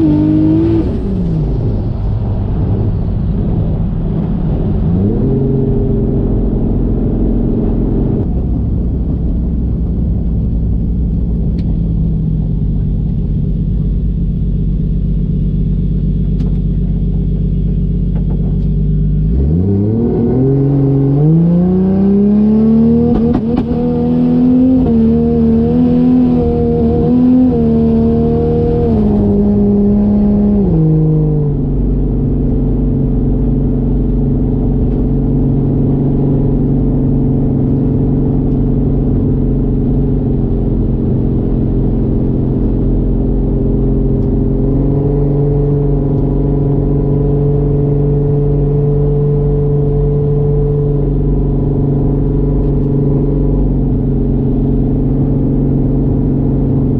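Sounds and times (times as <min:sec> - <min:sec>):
car engine revving: 0:00.0 - 0:56.9.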